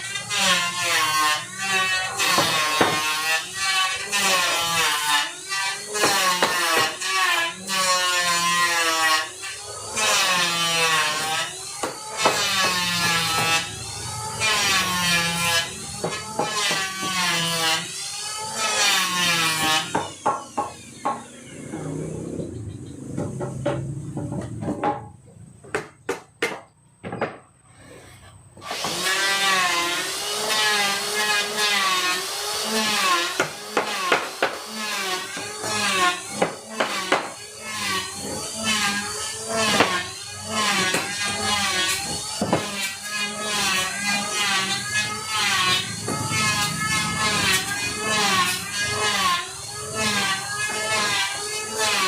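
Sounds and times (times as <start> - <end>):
hand saw cutting wood: 0.0 - 22.1, 27.7 - 52.0
sharp knocks: 19.7 - 21.3, 23.1 - 27.5.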